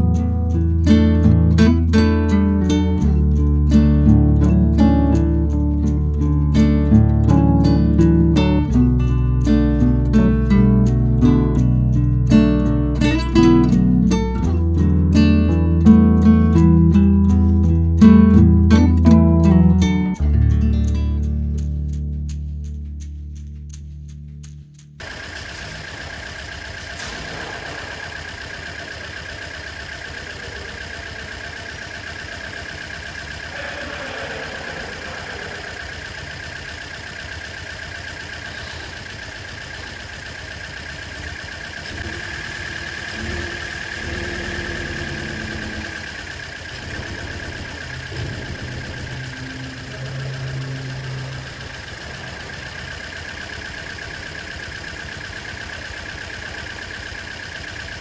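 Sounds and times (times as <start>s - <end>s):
car engine idling: 0.0s - 58.0s
high whine: 26.9s - 29.0s, 41.9s - 54.4s.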